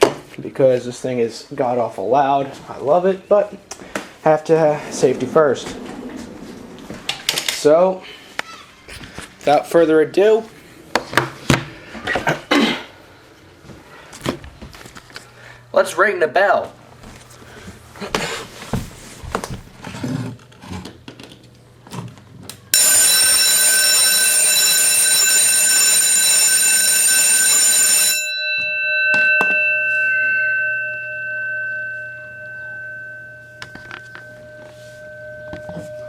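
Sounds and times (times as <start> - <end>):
electric bell ringing: 22.7 - 36.0.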